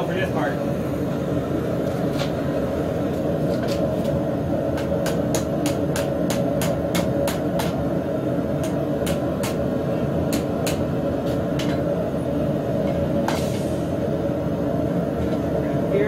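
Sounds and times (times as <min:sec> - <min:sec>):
hammer striking steel on anvil: 0:04.8 - 0:07.8, 0:10.3 - 0:10.8.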